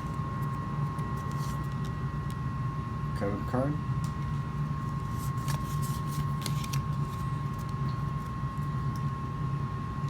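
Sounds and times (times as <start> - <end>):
steady low fan hum: 0.0 - 10.0
cards rustling and clicking: 0.5 - 2.0, 4.8 - 8.4.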